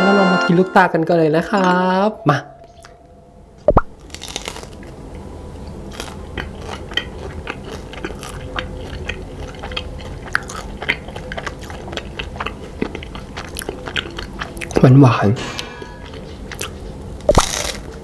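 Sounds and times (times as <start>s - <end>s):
biting and chewing candy: 4.0s - 5.0s, 5.7s - 18.0s.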